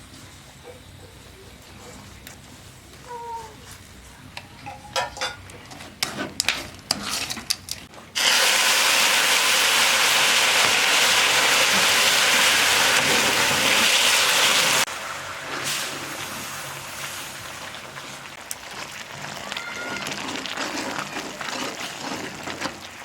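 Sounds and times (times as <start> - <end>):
loud steady hiss: 8.1 - 19.3
utensil clicking and scraping: 20.0 - 22.9.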